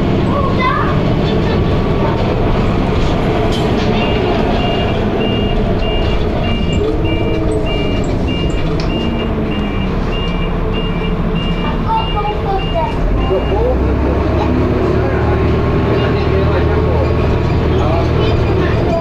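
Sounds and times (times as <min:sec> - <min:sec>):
bus diesel engine running: 0:00.0 - 0:19.0
high electronic beep: 0:04.0 - 0:13.7.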